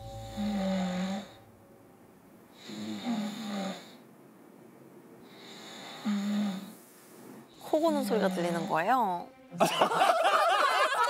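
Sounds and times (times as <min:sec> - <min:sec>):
man snoring: 0:02.6 - 0:04.0, 0:05.4 - 0:06.7.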